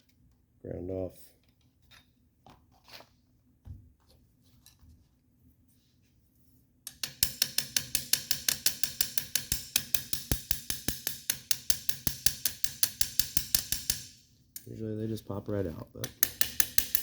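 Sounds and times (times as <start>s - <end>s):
hammer tapping on metal: 6.9s - 14.1s, 16.0s - 17.0s.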